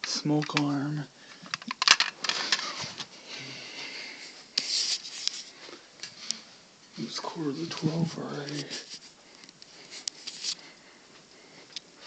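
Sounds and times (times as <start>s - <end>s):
handling clicks and knocks: 0.0s - 0.8s, 1.4s - 2.7s
rustling: 1.2s - 12.0s.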